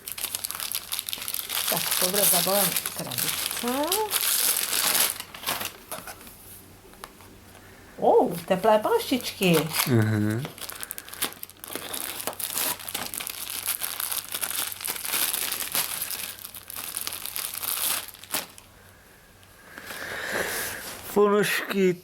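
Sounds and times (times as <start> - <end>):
gift wrapping tearing and crumpling: 0.0 - 6.2, 8.9 - 18.7.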